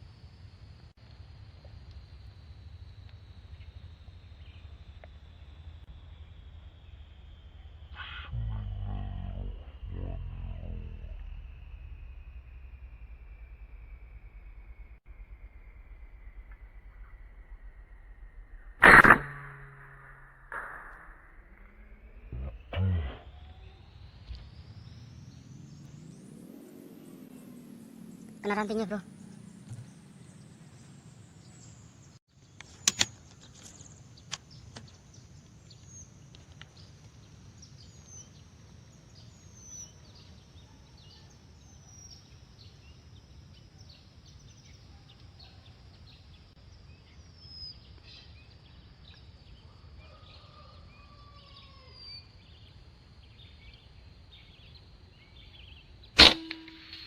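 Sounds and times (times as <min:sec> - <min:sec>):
air rifle shot: 0:18.8 - 0:19.9, 0:56.2 - 0:57.0.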